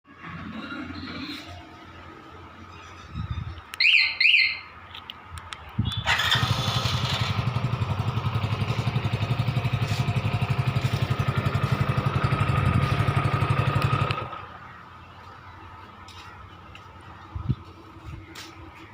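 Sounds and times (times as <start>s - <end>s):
motorcycle alarm chirps: 3.8s - 4.7s
motorcycle engine idling: 6.1s - 15.5s.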